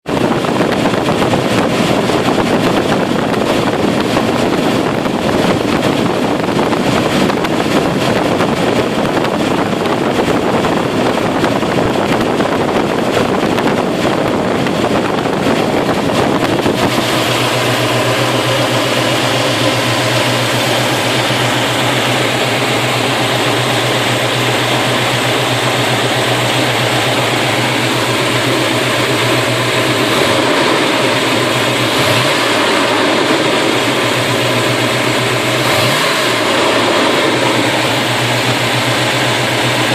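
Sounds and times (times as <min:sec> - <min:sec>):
engine idling: 0:00.0 - 0:39.9
steady low hum: 0:00.1 - 0:39.9.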